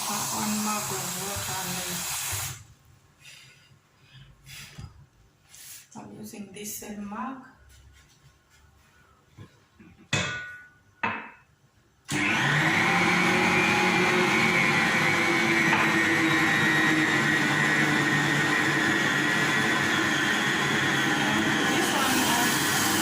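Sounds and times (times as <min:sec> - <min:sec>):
electric mixer running: 0:00.0 - 0:02.6, 0:12.1 - 0:23.0.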